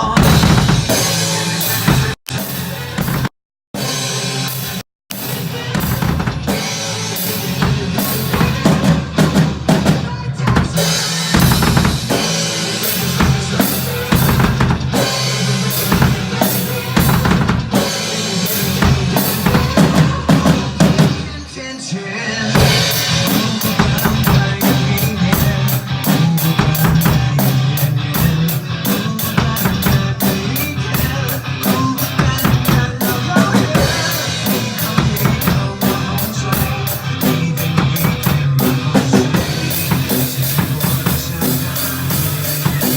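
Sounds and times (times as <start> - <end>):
drum kit playing: 0.0 - 21.6, 22.3 - 42.9
backing track music: 0.0 - 42.9.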